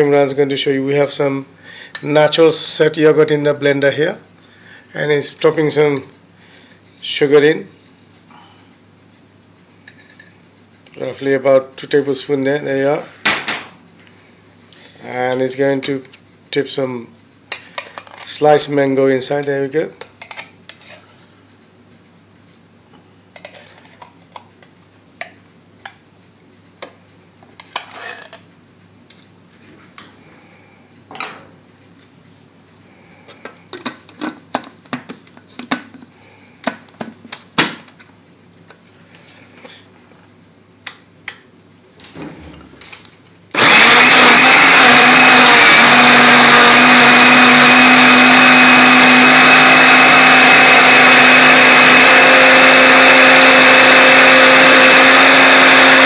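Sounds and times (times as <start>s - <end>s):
blender running: 43.5s - 56.0s.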